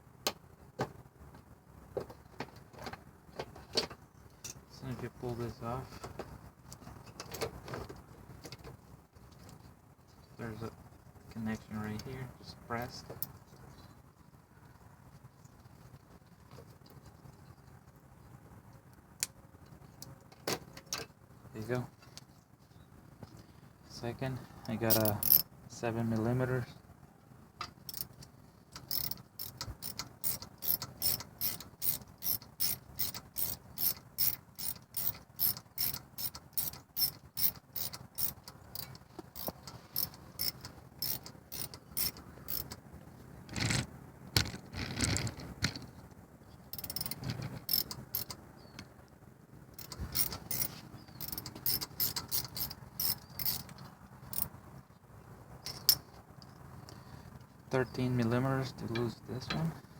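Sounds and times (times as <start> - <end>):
ratchet wrench clicking: 24.9 - 25.4, 27.9 - 28.1, 28.8 - 42.8, 46.8 - 48.4, 49.8 - 54.5.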